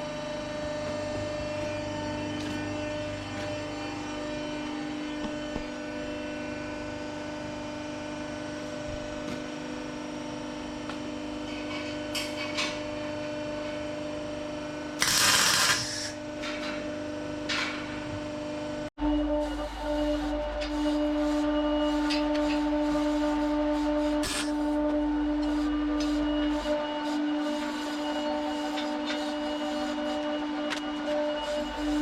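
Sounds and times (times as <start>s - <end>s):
loud hissing burst: 15.0s - 16.2s.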